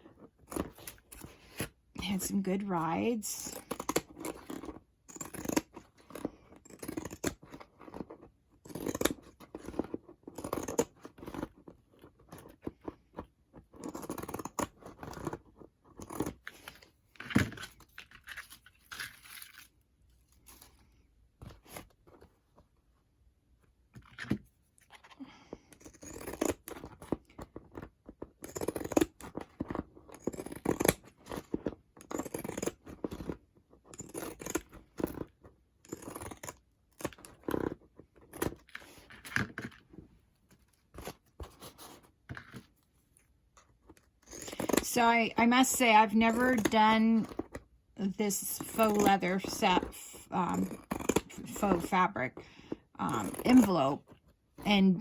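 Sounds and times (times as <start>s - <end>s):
handling and scraping of material: 0.0s - 55.0s.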